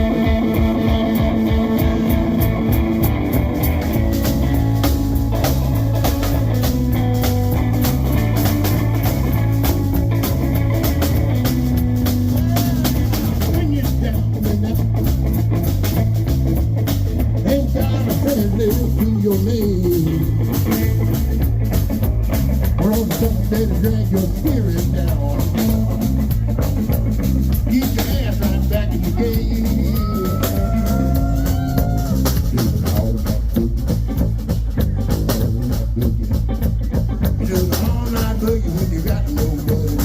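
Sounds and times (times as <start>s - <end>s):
drum kit and bass groove: 0.0s - 40.0s
electric guitar lead: 0.0s - 40.0s.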